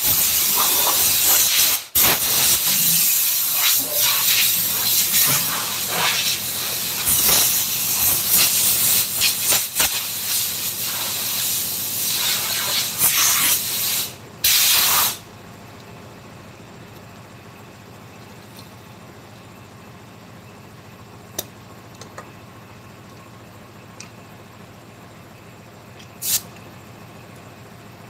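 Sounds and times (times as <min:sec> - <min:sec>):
compressed air hissing from air tool: 0:00.0 - 0:15.2, 0:26.2 - 0:26.5.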